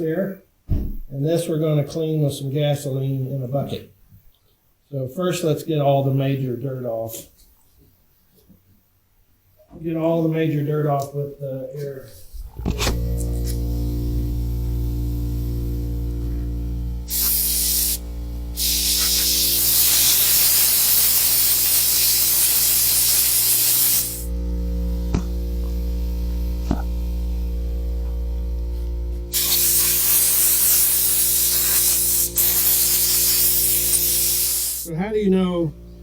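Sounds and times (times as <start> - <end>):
compressed air hissing blasts: 12.2 - 24.4, 28.6 - 35.0.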